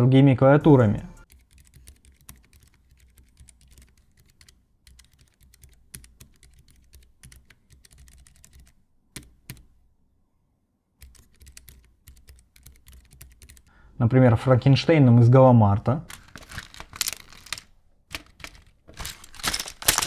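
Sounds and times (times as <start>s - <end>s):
mechanical keyboard typing: 1.2s - 9.7s, 11.0s - 13.7s, 16.1s - 20.0s.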